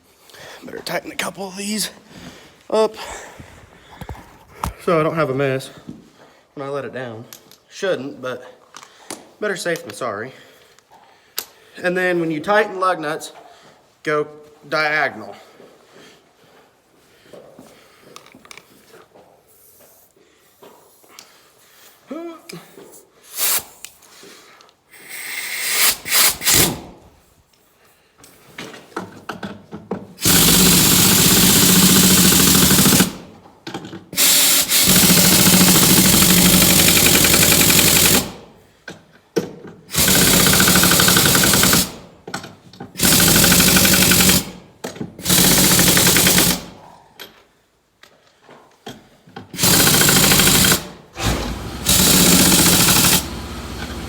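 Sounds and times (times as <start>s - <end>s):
air impact wrench bursts: 23.3s - 23.9s, 25.0s - 27.0s, 30.2s - 33.4s, 34.2s - 38.6s, 39.9s - 42.2s, 43.0s - 46.8s, 49.6s - 54.0s.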